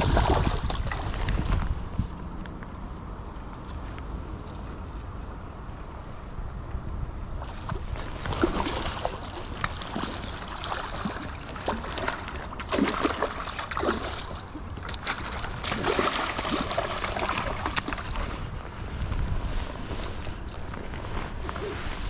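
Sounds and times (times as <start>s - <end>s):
splashing in river water: 0.0s - 1.7s, 7.4s - 22.0s
wind: 0.0s - 22.0s
river current rushing: 7.8s - 22.0s.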